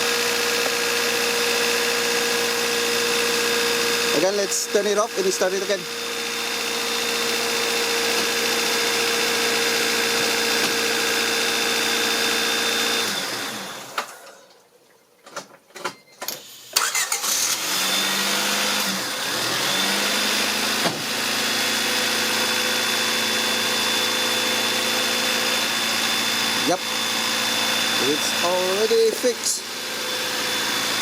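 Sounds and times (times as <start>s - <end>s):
engine cranking and starting: 16.3s - 19.9s.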